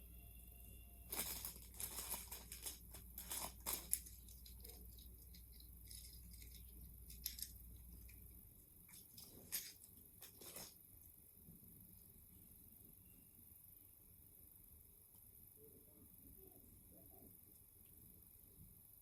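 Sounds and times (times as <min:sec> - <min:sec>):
plastic packaging crinkling: 0:01.0 - 0:08.2, 0:08.9 - 0:10.8.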